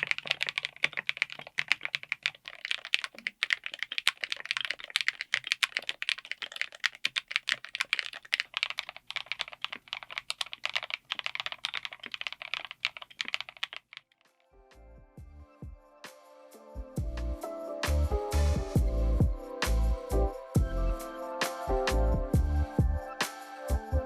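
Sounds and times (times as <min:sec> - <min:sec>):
mechanical keyboard typing: 0:00.0 - 0:14.2.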